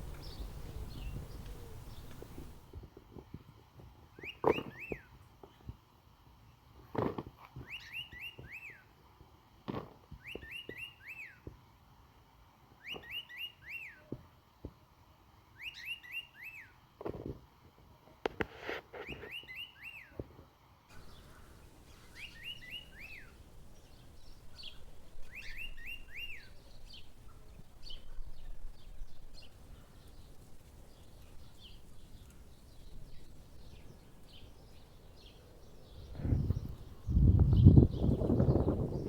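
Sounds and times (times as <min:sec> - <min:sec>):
birds chirping: 0:00.0 - 0:02.7, 0:20.9 - 0:39.0
bird whistling a rising phrase: 0:21.9 - 0:23.4, 0:24.6 - 0:26.6.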